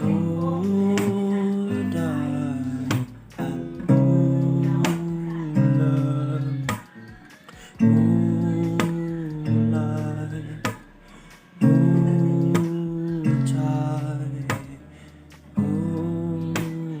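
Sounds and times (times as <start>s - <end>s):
acoustic guitar strumming chords: 0.0s - 17.0s.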